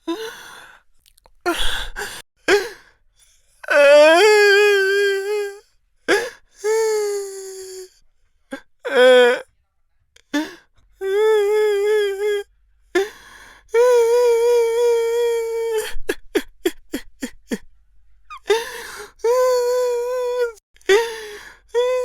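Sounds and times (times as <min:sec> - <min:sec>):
gasping sobs: 0:00.0 - 0:00.8, 0:01.4 - 0:02.9, 0:03.6 - 0:07.9, 0:18.3 - 0:22.0.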